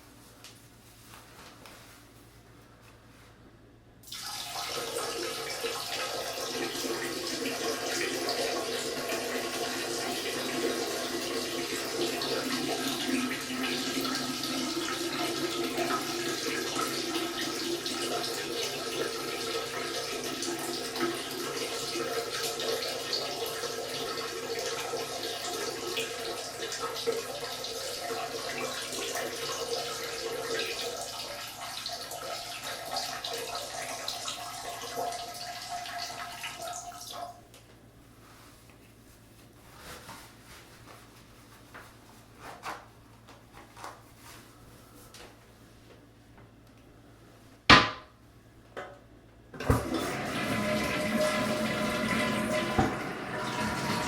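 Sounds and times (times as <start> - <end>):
urine splashing into toilet water: 4.1 - 37.3.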